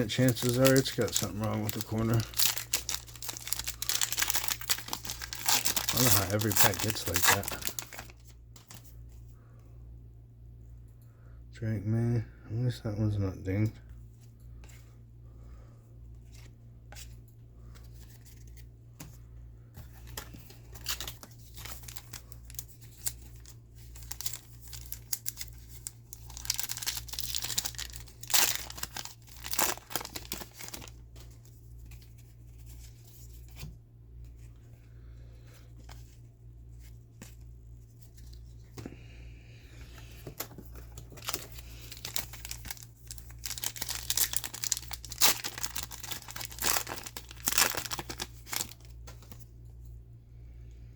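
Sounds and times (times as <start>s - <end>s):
card pack wrappers tearing and crinkling: 0.0s - 8.9s, 20.0s - 33.2s, 40.4s - 49.4s
cards being handled: 0.0s - 9.2s, 16.2s - 34.5s
steady low hum: 0.0s - 50.9s.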